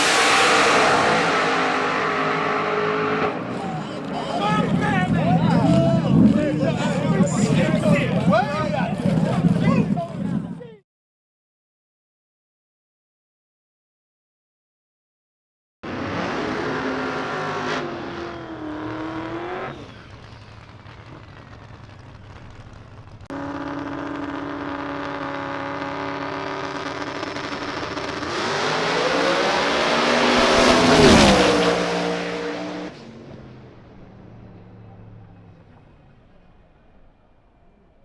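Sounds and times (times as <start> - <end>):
race car engine revving: 0.0 - 9.6, 15.8 - 20.3, 23.3 - 35.6
car engine passing by: 28.2 - 35.8.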